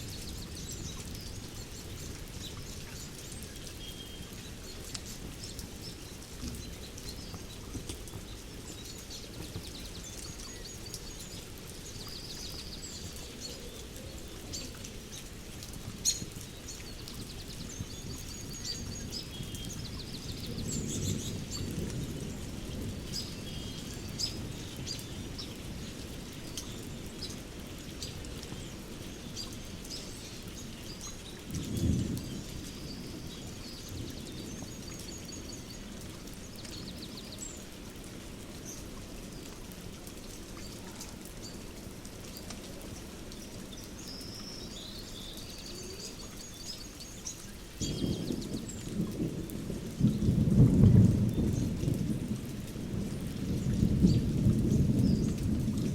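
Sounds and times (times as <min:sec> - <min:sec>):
distant thunder: 0:20.2 - 0:24.6, 0:47.8 - 0:55.9.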